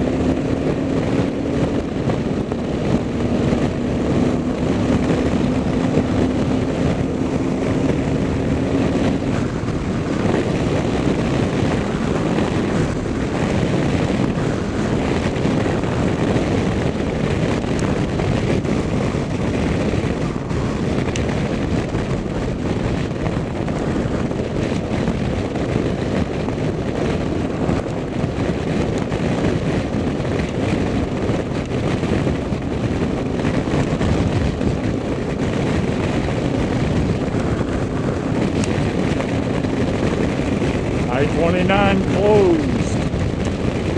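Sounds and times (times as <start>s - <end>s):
car road and engine noise: 0.0s - 43.9s.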